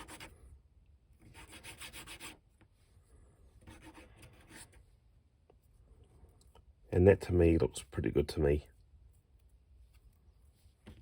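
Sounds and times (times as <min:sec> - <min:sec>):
hand sanding on a nail file: 0:00.0 - 0:00.3, 0:01.2 - 0:02.4.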